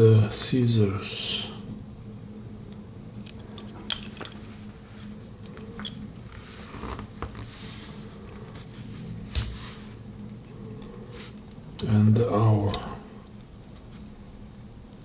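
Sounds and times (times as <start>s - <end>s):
steady low hum: 0.0s - 15.0s
soft rubbing and fiddling: 3.4s - 11.8s, 13.2s - 14.2s.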